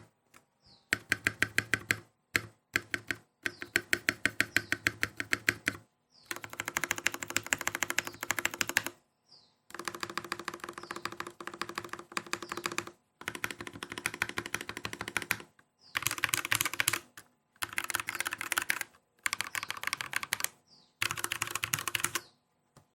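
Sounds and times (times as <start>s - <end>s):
fast mechanical keyboard typing: 0.9s - 9.0s, 9.7s - 22.3s.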